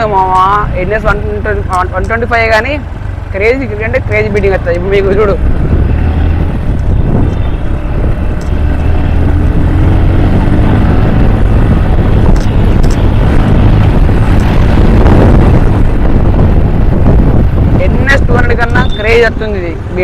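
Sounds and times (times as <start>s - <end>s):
motorcycle engine running: 0.0s - 20.0s
wind on microphone: 4.9s - 20.0s.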